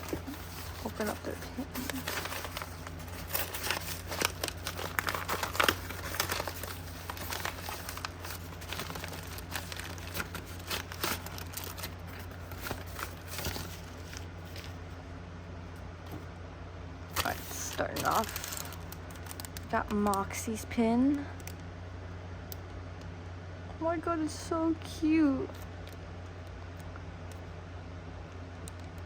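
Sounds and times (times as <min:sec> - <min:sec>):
plastic packaging crinkling: 0:00.0 - 0:15.0, 0:17.1 - 0:20.5.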